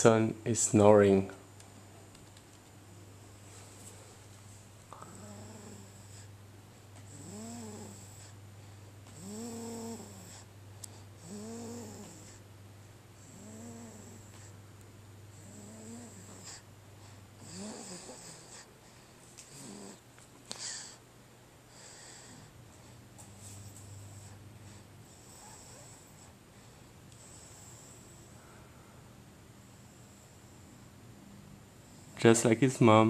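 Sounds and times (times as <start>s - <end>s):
low steady hum: 0.0s - 33.0s
baby snoring softly: 4.9s - 6.4s, 7.1s - 8.4s, 9.1s - 12.5s, 13.2s - 14.6s, 15.3s - 21.0s, 21.7s - 28.6s.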